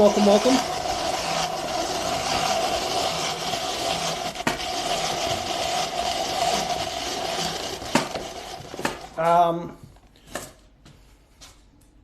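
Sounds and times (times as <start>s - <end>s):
appliance motor grinding carrots: 0.0s - 9.5s.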